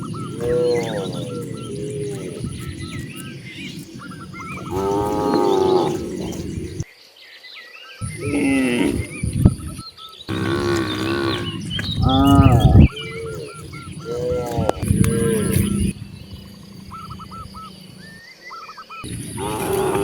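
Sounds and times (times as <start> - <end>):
cattle mooing: 0.0 - 6.8, 10.3 - 16.0, 19.2 - 20.0.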